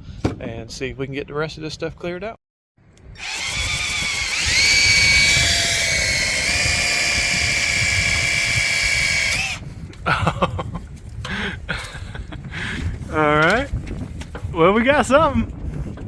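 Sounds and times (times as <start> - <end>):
power drill spinning brush: 3.2 - 9.7.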